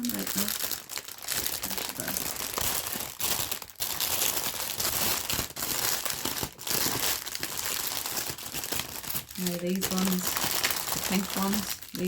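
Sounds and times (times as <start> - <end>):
plastic packaging crinkling: 0.0 - 12.0.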